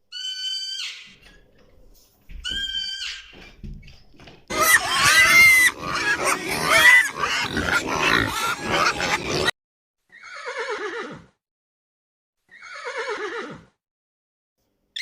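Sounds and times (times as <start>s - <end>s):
horse whinnying: 4.5s - 9.5s, 10.2s - 11.3s, 12.5s - 13.7s
pigs squealing and grunting: 4.5s - 9.6s.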